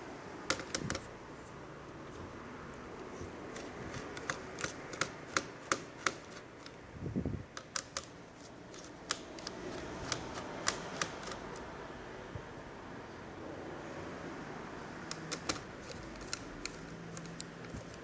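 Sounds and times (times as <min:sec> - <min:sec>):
small hard parts clicking and tapping: 0:00.5 - 0:01.1, 0:03.5 - 0:06.8, 0:07.5 - 0:11.4, 0:15.0 - 0:18.0.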